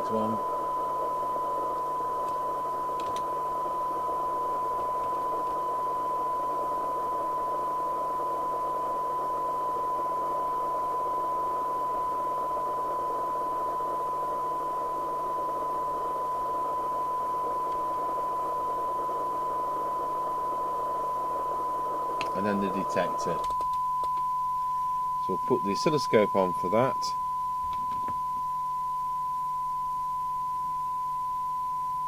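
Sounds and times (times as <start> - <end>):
radio hiss: 0.0 - 23.5, 24.6 - 27.2
steady test tone: 0.0 - 32.0.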